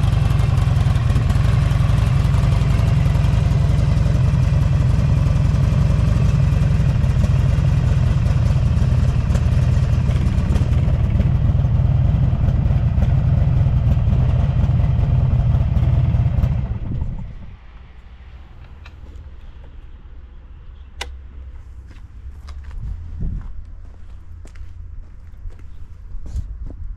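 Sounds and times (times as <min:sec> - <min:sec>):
engine switched off: 0:00.0 - 0:17.3
motorcycle engine idling: 0:00.0 - 0:17.5.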